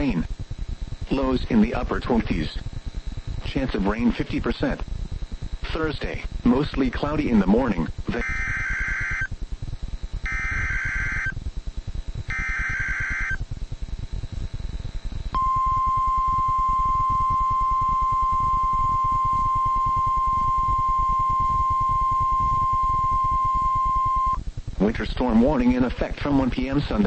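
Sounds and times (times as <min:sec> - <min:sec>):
radio static: 0:05.6 - 0:09.4, 0:10.3 - 0:11.5, 0:12.2 - 0:13.4, 0:16.8 - 0:27.0
steady warning alarm tone: 0:07.1 - 0:09.5, 0:10.1 - 0:13.4, 0:14.1 - 0:24.4
screechy digital data bursts: 0:07.2 - 0:09.4, 0:10.2 - 0:11.4, 0:12.2 - 0:13.4.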